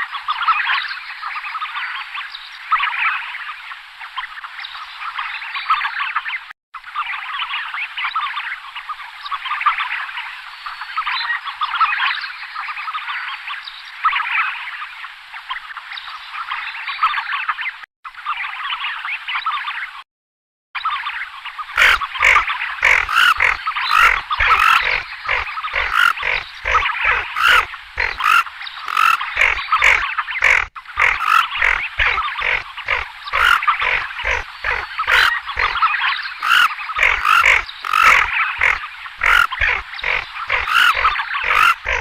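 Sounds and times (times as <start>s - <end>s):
ducks croaking in a flock: 21.7s - 42.0s.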